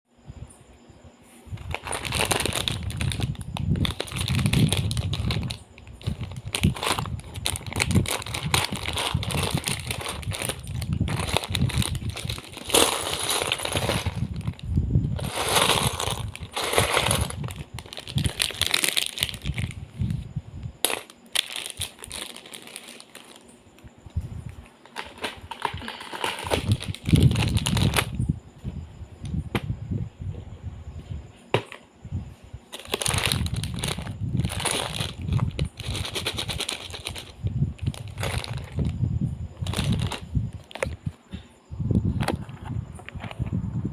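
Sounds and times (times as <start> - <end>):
plastic packaging crinkling: 1.5 - 20.2, 20.8 - 23.6, 24.9 - 28.2, 32.7 - 39.0, 39.6 - 41.0.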